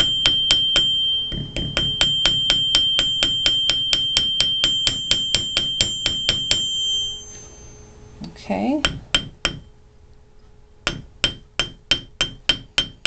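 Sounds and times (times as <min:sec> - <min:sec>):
hammer tapping wire on steel block: 0:00.0 - 0:06.8, 0:08.8 - 0:09.7, 0:10.8 - 0:13.0.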